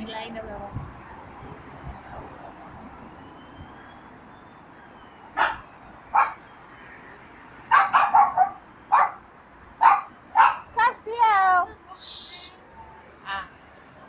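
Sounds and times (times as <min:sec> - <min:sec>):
small dog barking: 0:05.4 - 0:05.6, 0:07.7 - 0:09.2, 0:09.8 - 0:10.7.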